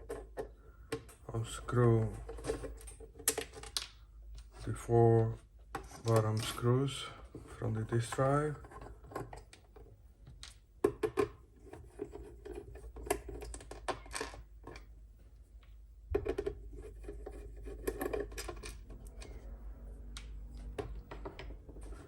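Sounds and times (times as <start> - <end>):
taps and handling noise: 7.3 - 19.4, 20.1 - 22.0
screwdriver scratching and clicking: 16.7 - 19.3.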